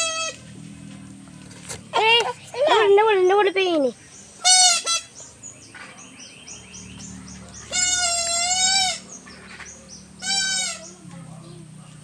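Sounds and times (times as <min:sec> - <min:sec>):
drawn-out animal call: 0:00.0 - 0:00.6, 0:07.2 - 0:11.8.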